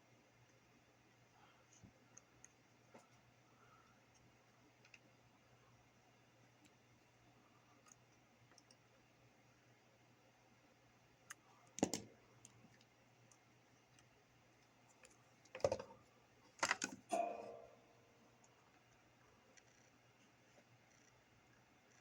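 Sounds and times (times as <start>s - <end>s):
faint steady hum: 0.0s - 22.0s
brief metallic ring: 17.1s - 17.9s.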